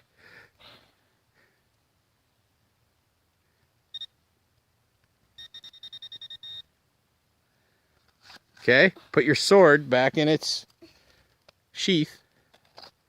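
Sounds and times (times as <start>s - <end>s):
metal detector beeps: 3.9s - 4.1s, 5.4s - 6.7s.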